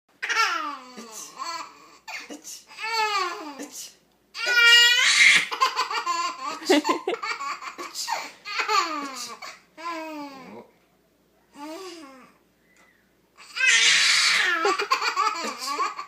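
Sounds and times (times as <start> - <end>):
baby laughing: 4.4 - 10.4, 13.4 - 16.0.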